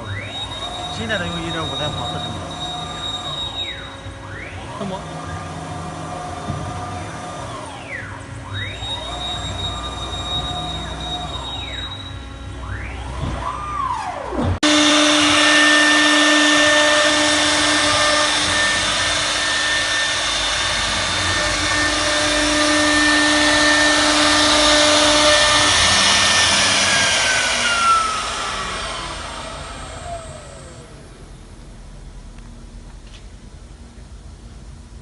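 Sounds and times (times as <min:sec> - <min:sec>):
router spindle whining: 0:00.0 - 0:31.4.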